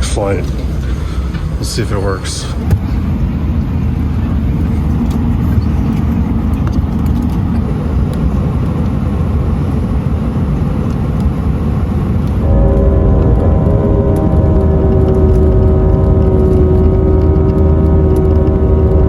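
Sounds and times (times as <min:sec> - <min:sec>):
airliner cabin rumble: 0:00.0 - 0:19.0.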